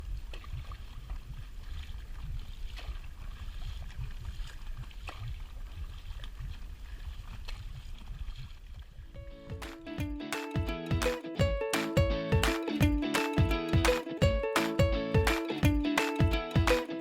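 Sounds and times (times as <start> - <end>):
water sloshing and splashing: 0.0 - 9.0.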